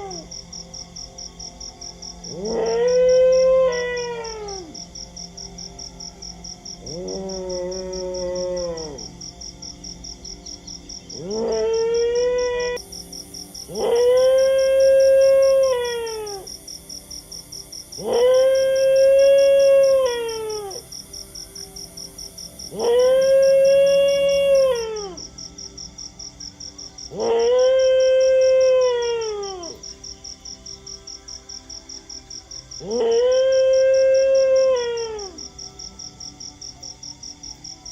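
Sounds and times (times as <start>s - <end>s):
dog howling: 0.0s - 0.3s, 2.3s - 4.8s, 6.8s - 9.2s, 11.2s - 12.8s, 13.7s - 16.5s, 18.0s - 20.9s, 22.7s - 25.3s, 27.1s - 29.8s, 32.8s - 35.5s
cricket chirping: 0.0s - 37.9s.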